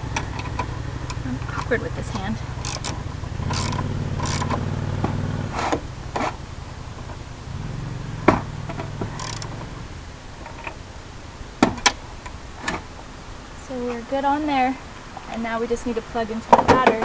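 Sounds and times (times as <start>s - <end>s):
low hum: 0.0s - 16.4s.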